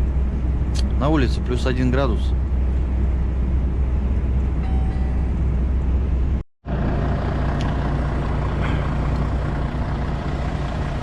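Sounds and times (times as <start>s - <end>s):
truck engine droning: 0.0s - 11.0s.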